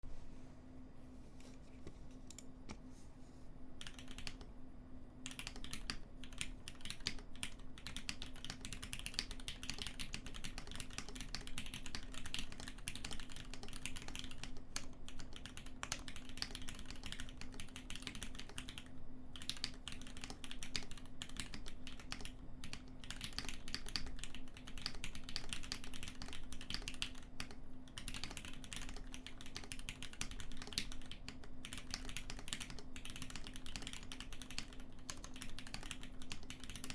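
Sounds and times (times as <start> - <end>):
mechanical keyboard typing: 3.8 - 4.5, 5.2 - 36.9.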